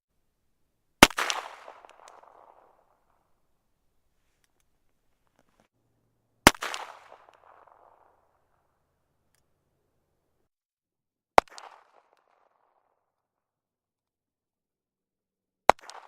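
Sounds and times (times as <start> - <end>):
handgun gunshots with echo: 1.0 - 3.0, 6.4 - 8.6, 11.4 - 12.3, 15.7 - 16.0.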